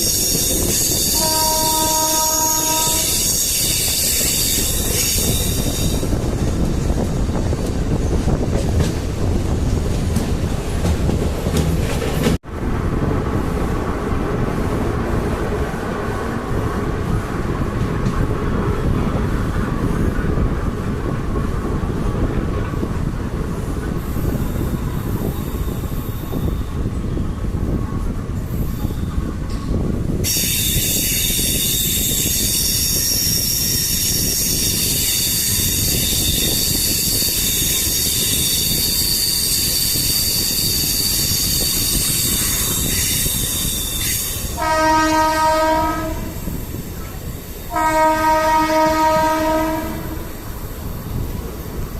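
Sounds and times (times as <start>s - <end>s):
train wheels squealing: 0.0s - 6.3s, 24.1s - 27.5s, 28.5s - 44.6s
electric train rumbling: 0.0s - 51.9s.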